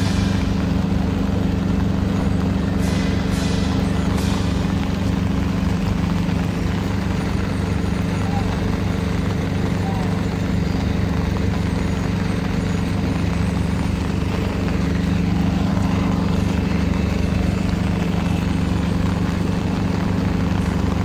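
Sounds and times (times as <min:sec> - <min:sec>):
constant noise: 0:00.0 - 0:21.0
engine humming: 0:00.0 - 0:21.0.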